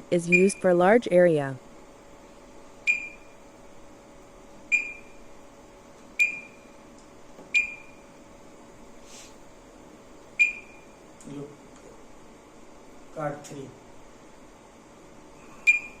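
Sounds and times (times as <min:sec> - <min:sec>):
keypad beeps: 0:00.3 - 0:00.7, 0:02.9 - 0:03.3, 0:04.7 - 0:05.2, 0:06.2 - 0:06.6, 0:07.5 - 0:08.0, 0:10.4 - 0:10.8, 0:15.6 - 0:16.0.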